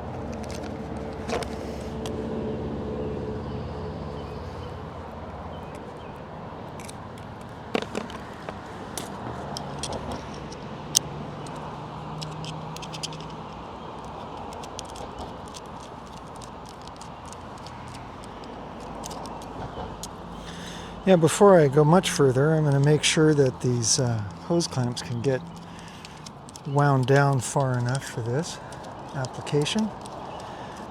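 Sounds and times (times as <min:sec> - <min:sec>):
outdoor background hiss: 0:00.0 - 0:30.9
metallic clicks and clinks: 0:06.7 - 0:21.0, 0:21.6 - 0:30.9.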